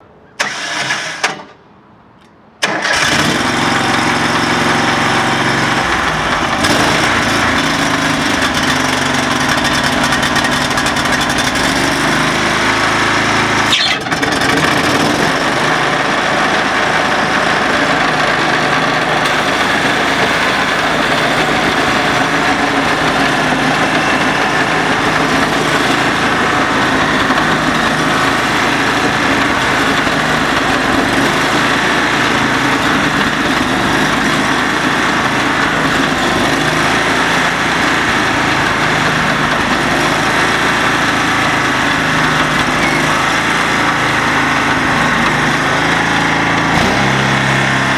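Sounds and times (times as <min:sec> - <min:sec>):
stump grinder engine running: 0:02.6 - 0:47.9.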